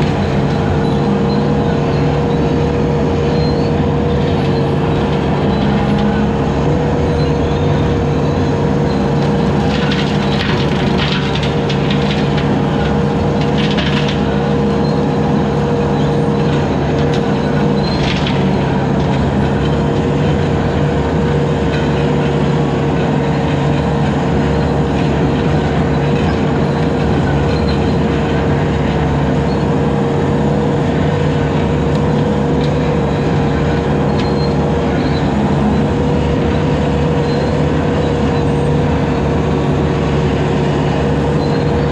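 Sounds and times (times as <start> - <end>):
diesel engine under load: 0.0 - 41.9.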